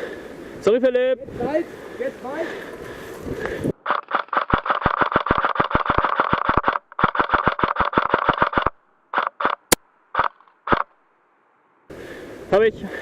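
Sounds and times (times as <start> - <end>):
airsoft gun firing bursts: 3.8 - 9.6
sharp click: 3.9 - 10.9.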